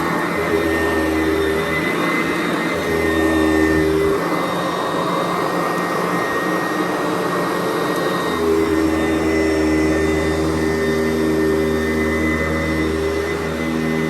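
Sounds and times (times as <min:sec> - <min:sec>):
upright vacuum cleaner running: 0:00.0 - 0:14.0.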